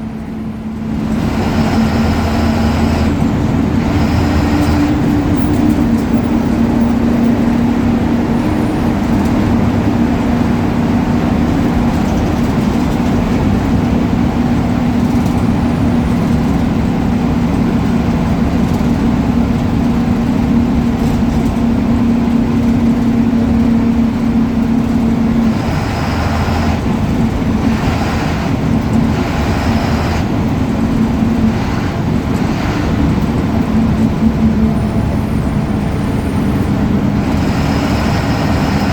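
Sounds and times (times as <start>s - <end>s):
diesel engine drone: 0.0s - 38.9s.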